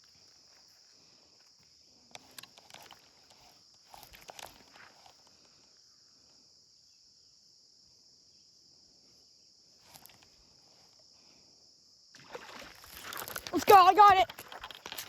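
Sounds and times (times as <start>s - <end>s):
faint rustle: 0.0s - 6.4s
high-pitched insect chorus: 0.0s - 15.0s.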